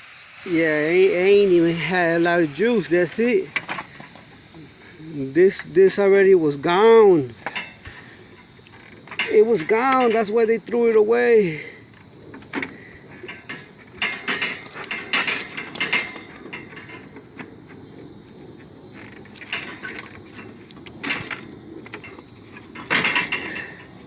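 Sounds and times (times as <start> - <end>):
metal parts clanking and rattling: 1.6 - 4.8, 6.7 - 11.1, 11.9 - 17.8, 19.0 - 24.0.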